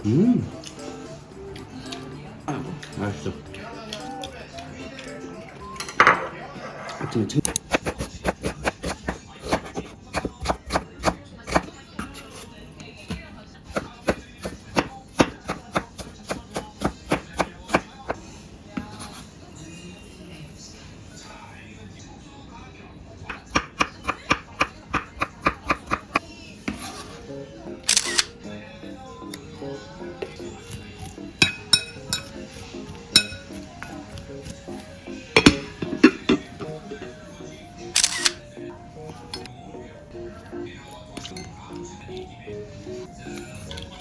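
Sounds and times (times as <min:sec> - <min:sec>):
background music: 0:00.0 - 0:09.6, 0:26.7 - 0:44.0
knife chopping on cutting board: 0:07.5 - 0:12.5, 0:13.1 - 0:18.2, 0:23.3 - 0:27.2
glass dishware clinking: 0:31.4 - 0:32.4, 0:33.1 - 0:33.6, 0:35.4 - 0:36.6.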